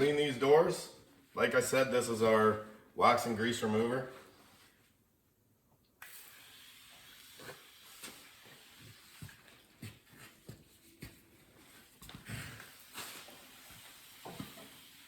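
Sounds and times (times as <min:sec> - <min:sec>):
faint hiss: 0:06.0 - 0:09.5, 0:12.3 - 0:15.0.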